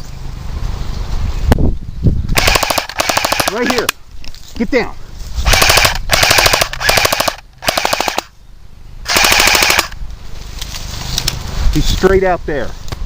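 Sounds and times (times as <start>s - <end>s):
airsoft rifle firing bursts: 2.4s - 3.9s, 5.5s - 8.3s, 9.1s - 10.0s.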